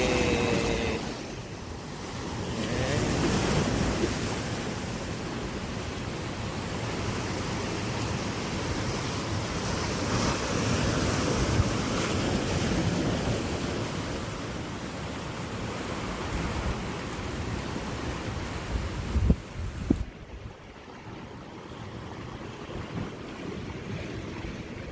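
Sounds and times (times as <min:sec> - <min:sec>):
ocean surf washing in: 0:00.0 - 0:24.9
wind buffeting microphone: 0:18.7 - 0:20.6.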